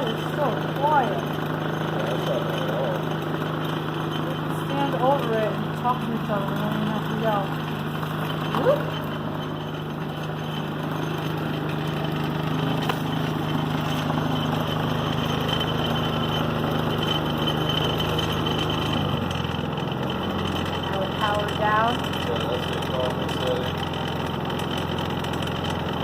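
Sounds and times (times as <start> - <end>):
generator engine running: 0.0 - 26.0.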